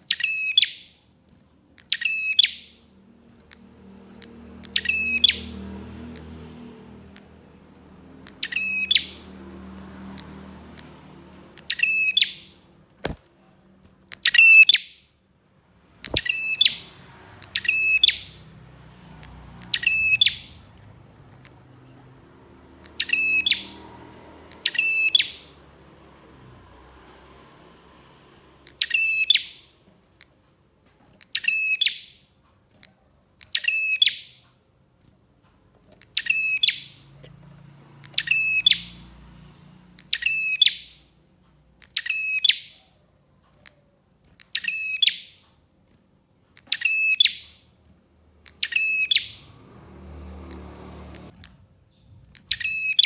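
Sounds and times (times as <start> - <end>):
bird clicking rattle calls: 1.6 - 13.3, 16.0 - 26.0.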